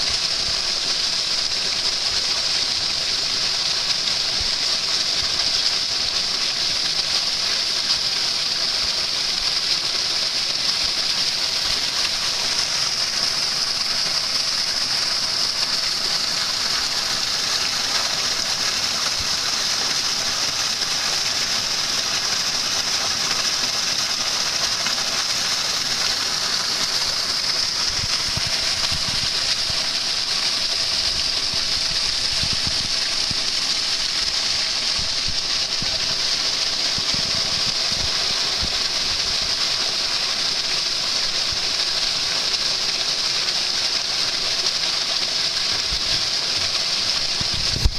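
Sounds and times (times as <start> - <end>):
stream flowing over stones: 0.0 - 47.9.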